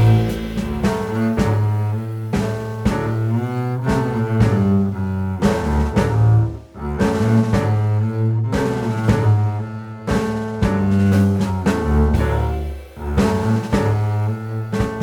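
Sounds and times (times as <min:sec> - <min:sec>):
background music with deep bass: 0:00.0 - 0:02.0.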